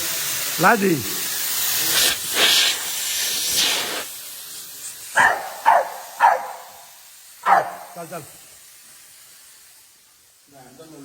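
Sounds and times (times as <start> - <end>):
hose water spray hissing: 0.0 - 11.0
dog barking: 5.2 - 8.0.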